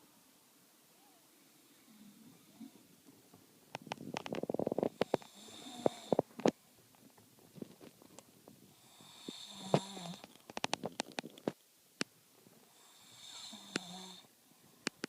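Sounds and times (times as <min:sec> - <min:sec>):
child snoring: 0:04.8 - 0:06.3, 0:08.8 - 0:10.3, 0:12.7 - 0:14.3.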